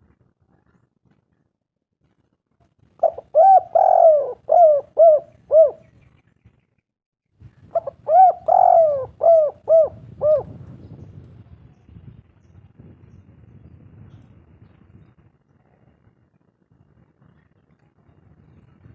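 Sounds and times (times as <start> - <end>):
dove cooing: 3.0 - 5.9, 7.7 - 10.6.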